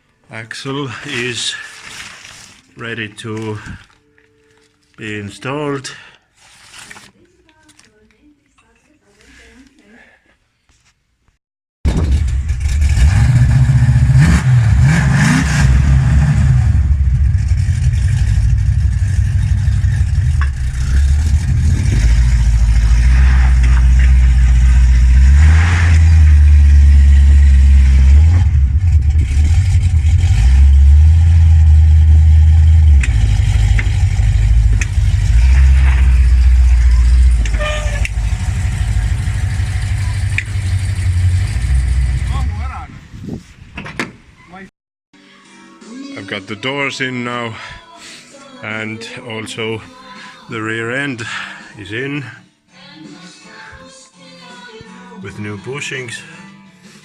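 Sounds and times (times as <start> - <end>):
vehicle engine droning: 11.9 - 42.8.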